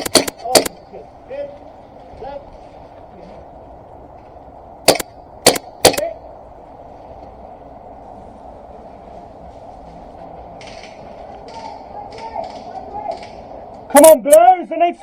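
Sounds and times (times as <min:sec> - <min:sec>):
airsoft gun shots: 0:00.0 - 0:00.8, 0:04.9 - 0:06.2.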